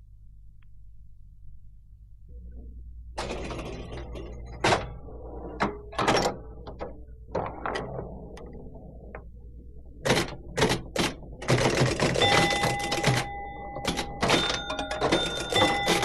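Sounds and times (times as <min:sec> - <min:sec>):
pinball machine clacks: 0:03.2 - 0:05.0, 0:05.6 - 0:08.0, 0:10.0 - 0:16.0
faint ringing tones: 0:11.9 - 0:16.0.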